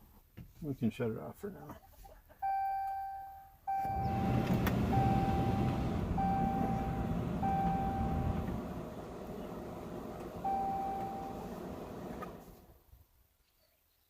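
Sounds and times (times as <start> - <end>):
vehicle warning chime beeps: 2.4 - 12.4
low rumbling noise: 3.8 - 12.7.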